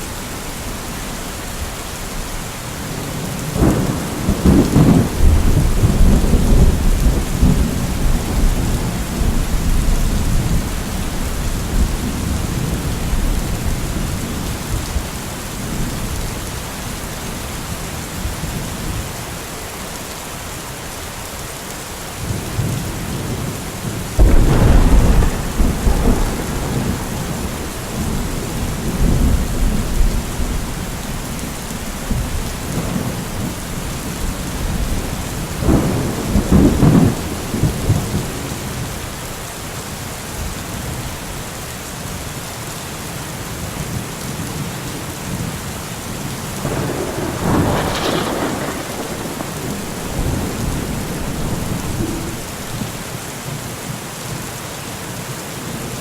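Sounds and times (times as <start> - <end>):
heavy rain: 0.0 - 56.0
thunder rumbling: 3.2 - 16.3, 22.6 - 39.0, 46.6 - 53.1.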